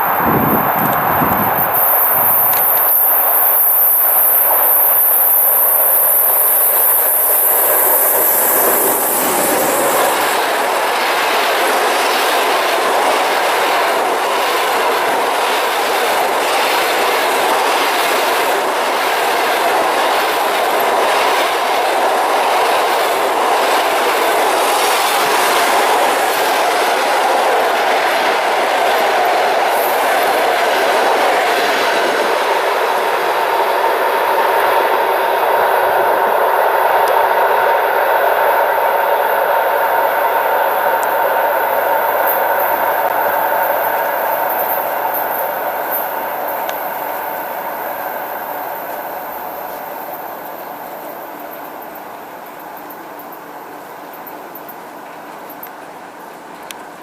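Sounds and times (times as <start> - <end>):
loud high hiss: 0.0 - 11.0
train passing at speed: 0.0 - 57.0.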